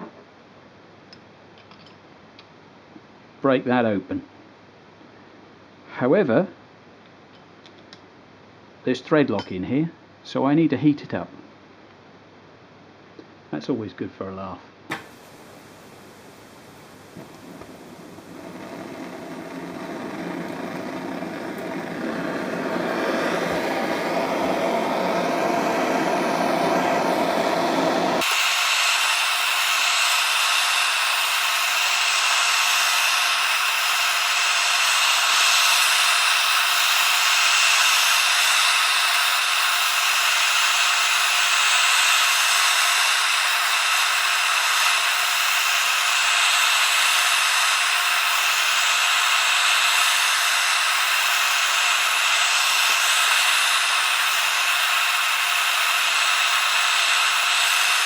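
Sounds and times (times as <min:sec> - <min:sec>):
heat gun blowing: 0:14.9 - 0:58.0.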